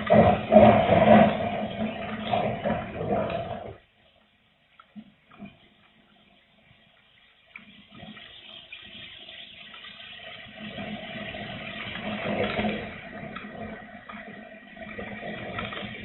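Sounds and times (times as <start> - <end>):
strong wind gusting: 0.0 - 3.8.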